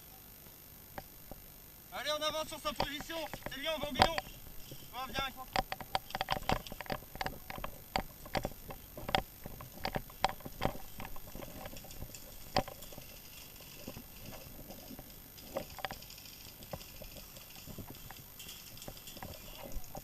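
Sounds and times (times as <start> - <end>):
footsteps on rough ground: 2.8 - 15.2.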